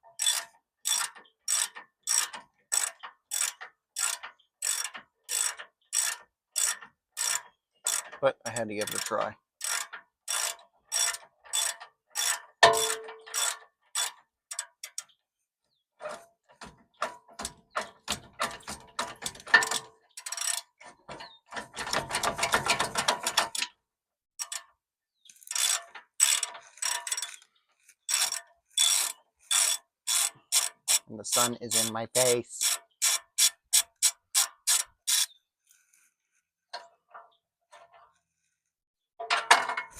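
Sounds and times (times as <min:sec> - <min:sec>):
ratchet wrench clicking: 0:00.2 - 0:08.1, 0:08.9 - 0:15.0, 0:25.3 - 0:27.4, 0:28.1 - 0:31.9, 0:32.6 - 0:35.3.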